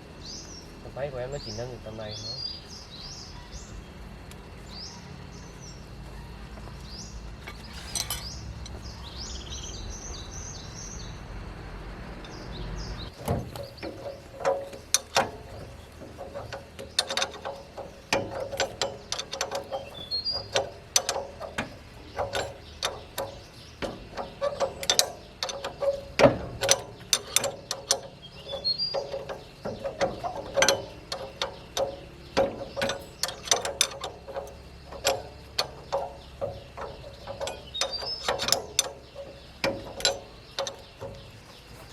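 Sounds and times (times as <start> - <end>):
birds chirping: 0.0 - 41.9
tools knocking on metal: 13.3 - 41.4.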